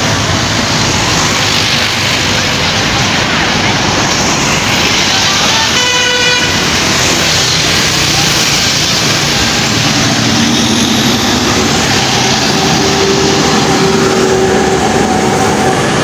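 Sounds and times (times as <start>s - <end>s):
bus engine running: 0.0s - 16.0s.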